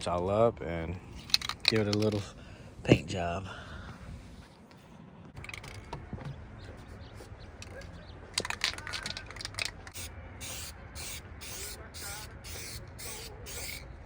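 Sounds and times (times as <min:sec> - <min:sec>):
spray paint hissing: 0:09.9 - 0:13.9.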